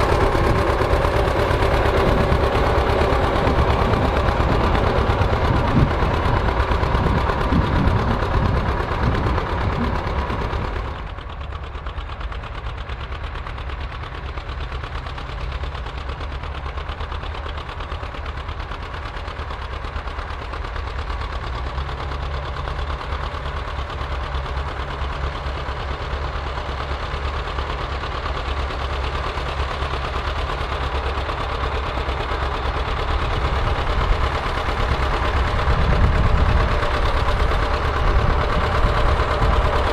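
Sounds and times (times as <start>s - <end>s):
quieter steady engine: 0.0s - 39.9s
tractor engines under load: 0.0s - 39.9s.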